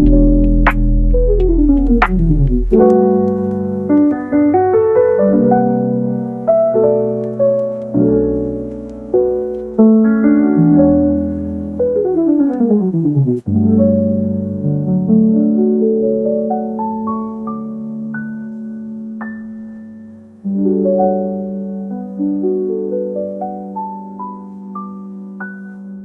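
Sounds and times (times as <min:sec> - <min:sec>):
piano music: 0:00.0 - 0:26.0
sharp click: 0:01.8 - 0:02.9.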